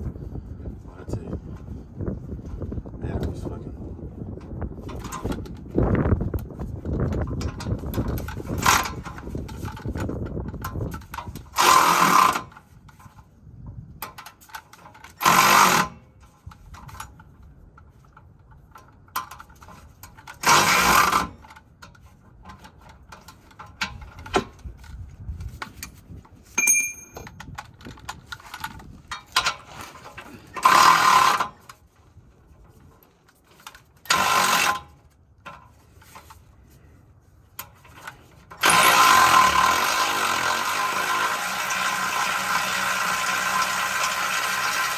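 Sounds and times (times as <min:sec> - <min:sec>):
cordless power tool bursts: 0:11.4 - 0:12.6, 0:15.1 - 0:16.0, 0:20.4 - 0:21.4, 0:30.2 - 0:31.6, 0:34.0 - 0:35.0, 0:38.6 - 0:44.9.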